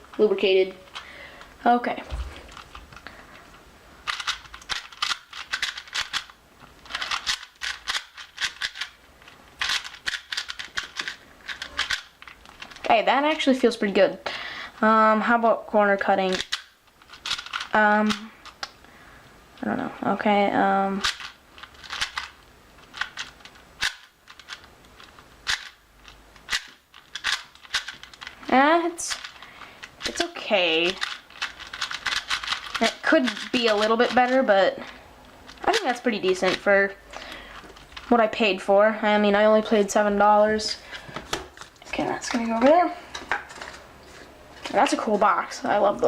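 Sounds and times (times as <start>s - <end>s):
speed cube clicking: 4.0s - 12.9s, 16.3s - 18.8s, 21.0s - 28.4s, 29.1s - 34.5s.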